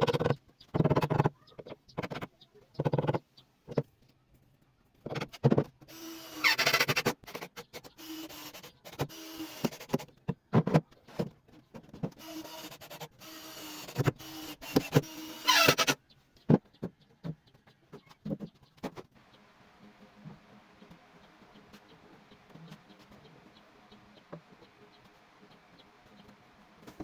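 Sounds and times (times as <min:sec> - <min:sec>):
small motor whirring: 0:05.9 - 0:10.0, 0:12.2 - 0:16.0.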